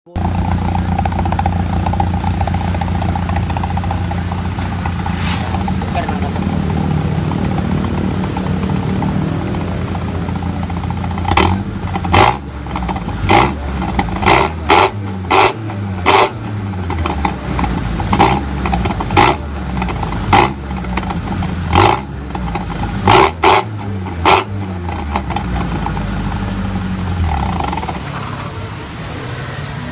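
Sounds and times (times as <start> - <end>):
pickup engine running roughly: 0.1 - 29.3
exhaust barks from throttle blips: 11.2 - 26.2.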